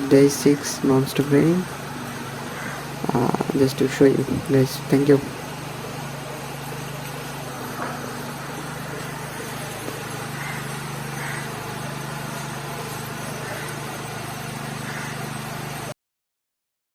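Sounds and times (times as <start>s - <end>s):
low engine-like hum: 0.0s - 15.9s
even hiss: 2.6s - 5.4s.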